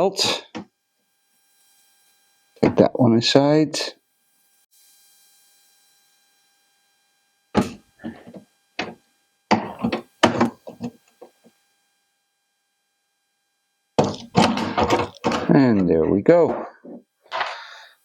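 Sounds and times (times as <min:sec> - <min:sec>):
sharp knocks and clicks of parts: 0:07.6 - 0:11.4, 0:14.0 - 0:17.6.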